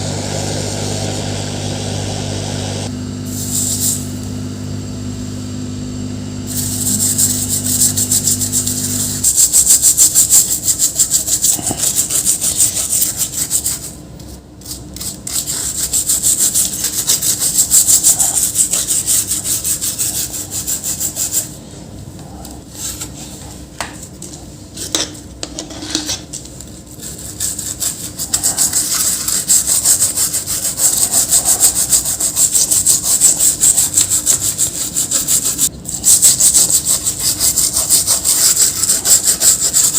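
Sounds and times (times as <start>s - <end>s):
steady low hum: 0.0s - 39.9s
brush scrubbing circuit board: 6.5s - 14.0s, 14.6s - 21.6s, 27.0s - 39.9s.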